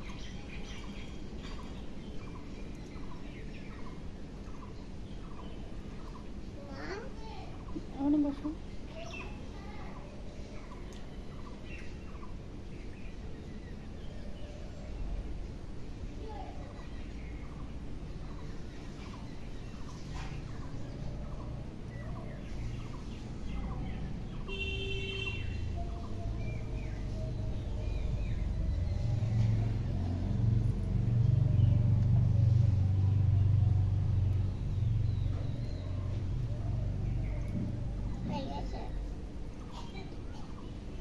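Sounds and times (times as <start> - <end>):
low rumble: 27.9 - 38.2.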